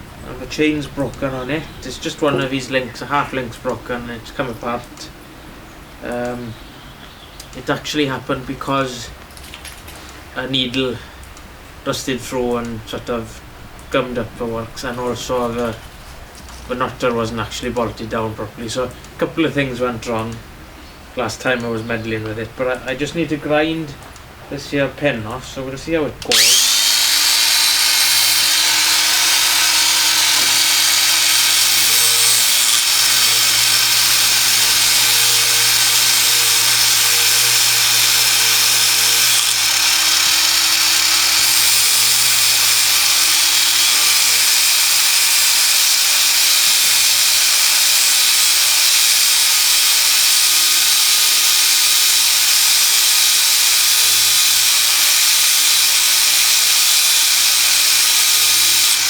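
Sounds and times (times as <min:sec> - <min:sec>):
angle grinder grinding metal: 0:26.2 - 0:59.0.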